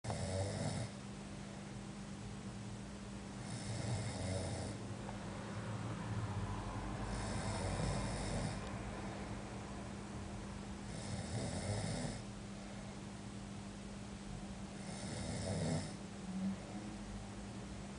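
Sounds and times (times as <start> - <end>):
steady low hum: 0.0 - 17.9
person snoring: 0.1 - 1.0, 3.4 - 4.8, 7.0 - 8.7, 10.9 - 12.2, 14.8 - 16.6.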